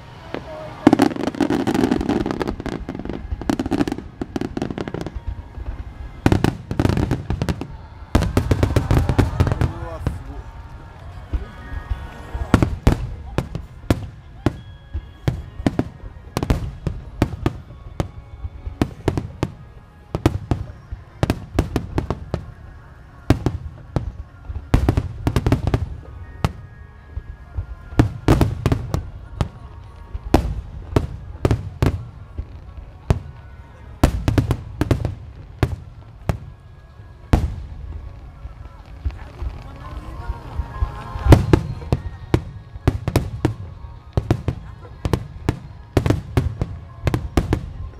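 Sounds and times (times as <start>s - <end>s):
fireworks bangs: 0.0s - 47.9s.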